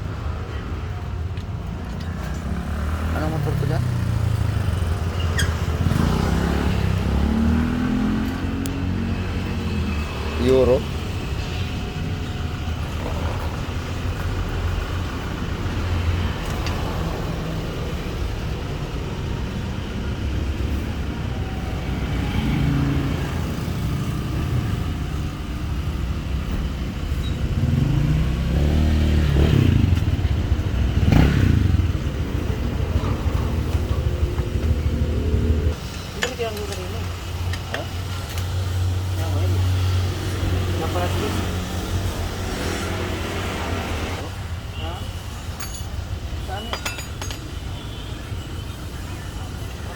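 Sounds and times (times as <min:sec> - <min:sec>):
motorcycle engine running and revving: 0:02.1 - 0:44.3.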